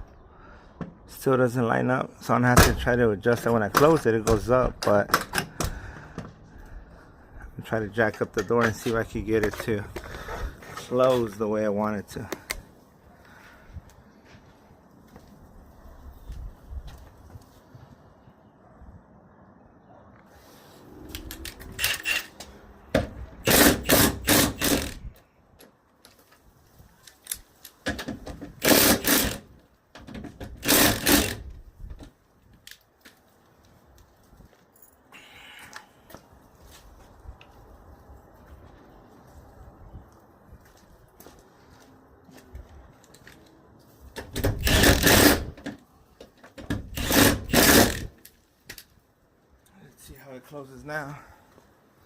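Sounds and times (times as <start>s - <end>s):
power tool rattling: 21.8s - 22.4s, 23.4s - 25.0s, 28.0s - 31.5s, 44.3s - 45.6s, 46.7s - 48.2s.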